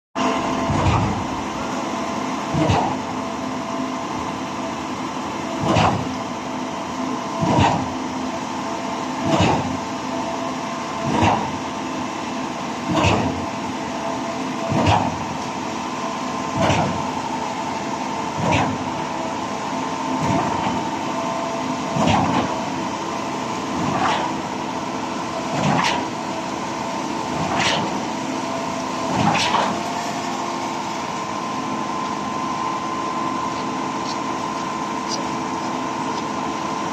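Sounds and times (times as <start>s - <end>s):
engine and hydraulic hum: 0.2s - 36.9s.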